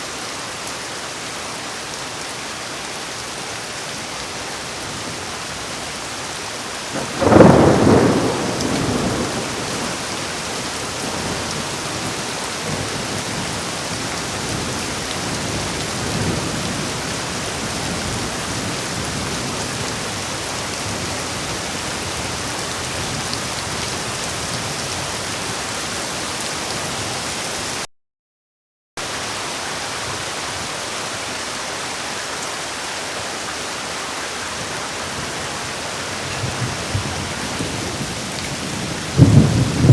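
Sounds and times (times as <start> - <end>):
heavy rain: 0.0 - 27.9, 29.0 - 39.9
thunderclap: 7.0 - 10.1, 36.4 - 39.9.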